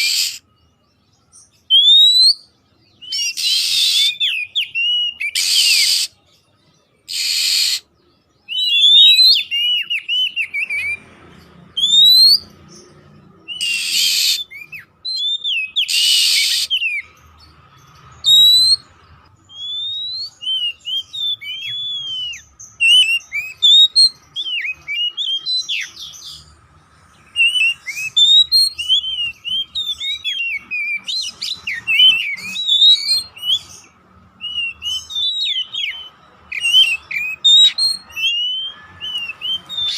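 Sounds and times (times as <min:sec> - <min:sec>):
harsh raspy bird calls: 0:00.0 - 0:00.6, 0:01.7 - 0:06.2, 0:07.1 - 0:07.9, 0:08.5 - 0:26.6, 0:27.2 - 0:39.9
songbird whistling: 0:00.0 - 0:39.9.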